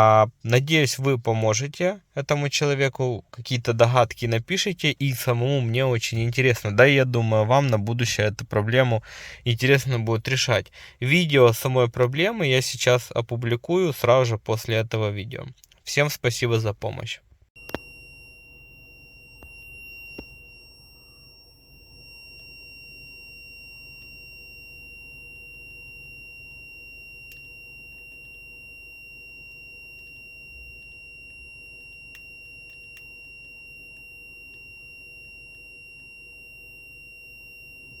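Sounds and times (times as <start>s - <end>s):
high-pitched whistle: 17.6s - 38.0s.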